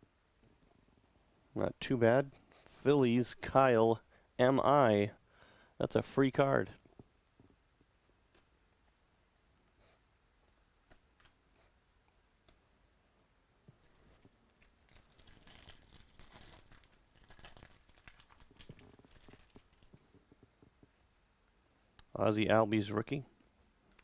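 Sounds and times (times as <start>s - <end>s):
foil wrapper tearing and crinkling: 13.8s - 19.9s.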